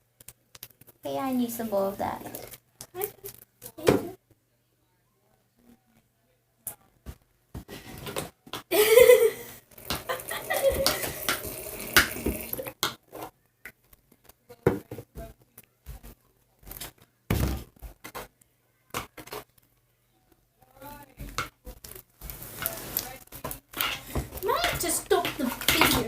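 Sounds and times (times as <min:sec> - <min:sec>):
slime mixing in a bowl: 0:21.2 - 0:26.0.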